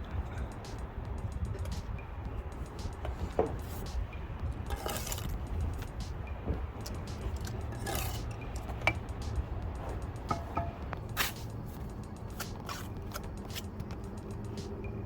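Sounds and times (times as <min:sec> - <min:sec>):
steel trowel scraping stone: 0:04.7 - 0:05.4, 0:07.3 - 0:08.9, 0:11.2 - 0:11.6, 0:12.2 - 0:13.7.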